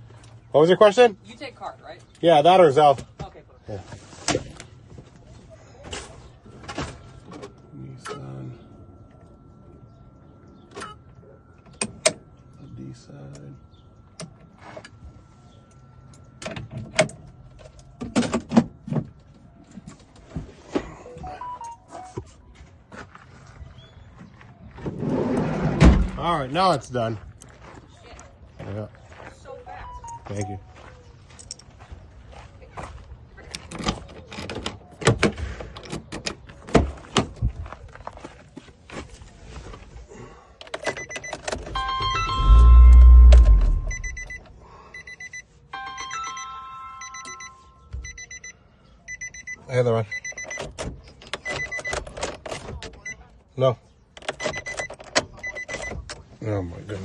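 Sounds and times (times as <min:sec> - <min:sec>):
phone ringtone: 0:21.1 - 0:22.2, 0:40.9 - 0:44.4, 0:45.0 - 0:50.6, 0:54.4 - 0:55.8
loud low rumble: 0:42.1 - 0:44.3.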